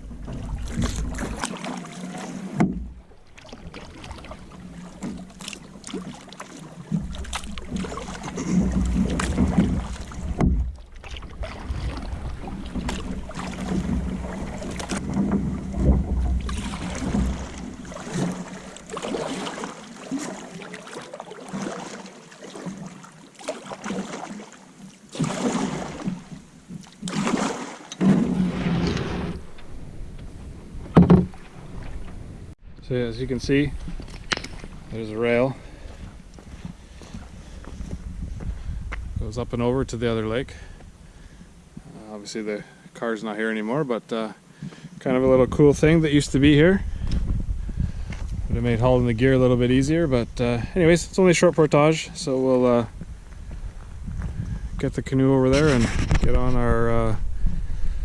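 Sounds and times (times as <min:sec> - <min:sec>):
canoe paddle splashing: 0:00.0 - 0:32.6, 0:33.2 - 0:39.1
water lapping against hull: 0:00.0 - 0:58.0
wind buffeting microphone: 0:06.9 - 0:18.8, 0:28.2 - 0:41.9, 0:44.8 - 0:58.0.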